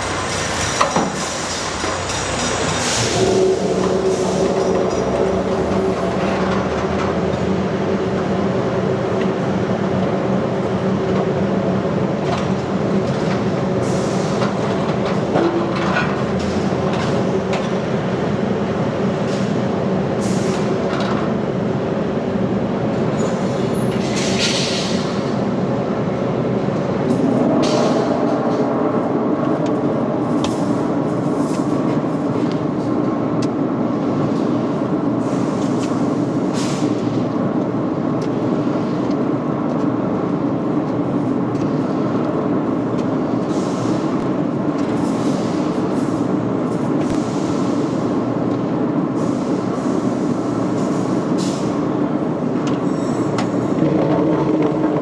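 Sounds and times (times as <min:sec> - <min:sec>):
heavy machinery humming: 0:00.0 - 0:10.9.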